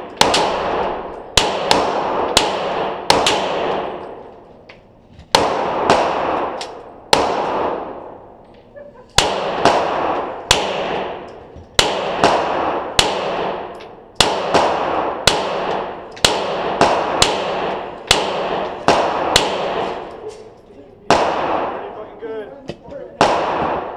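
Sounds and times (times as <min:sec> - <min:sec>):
pistol shots echoing: 0:00.0 - 0:04.5, 0:05.3 - 0:08.4, 0:09.1 - 0:22.2, 0:23.1 - 0:23.9.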